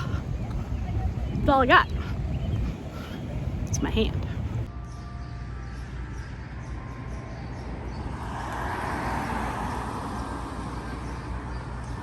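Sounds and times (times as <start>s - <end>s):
low rumble of road traffic: 0.0s - 12.0s
vehicle passing: 7.5s - 12.0s.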